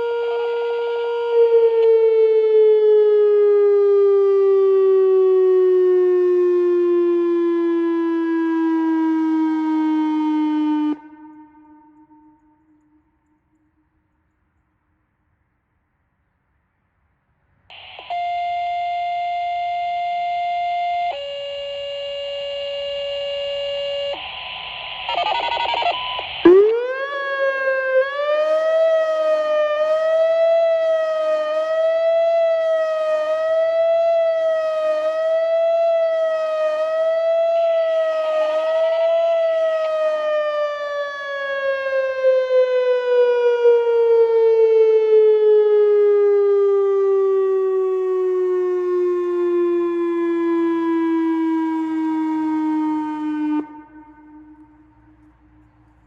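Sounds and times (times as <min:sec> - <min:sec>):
outdoor warning siren wavering: 0:00.0 - 0:14.4, 0:17.7 - 0:56.0
burst of radio noise: 0:17.7 - 0:19.3, 0:23.3 - 0:27.2
radio page tones: 0:17.7 - 0:20.3, 0:22.0 - 0:26.9.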